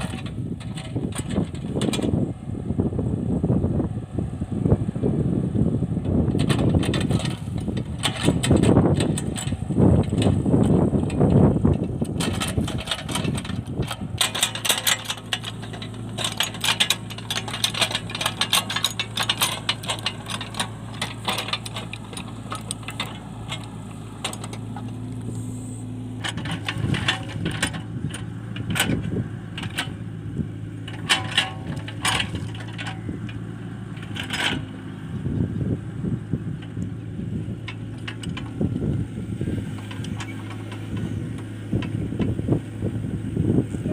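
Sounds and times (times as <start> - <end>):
excavator diesel engine running: 0.0 - 43.9
machine clicks and clanks: 6.3 - 25.0, 26.2 - 30.0, 30.8 - 34.8, 37.6 - 38.6.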